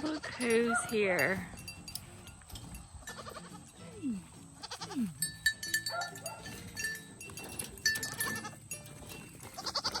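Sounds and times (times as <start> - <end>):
young goats bleating: 0.0 - 0.9, 3.0 - 6.0, 7.8 - 10.0.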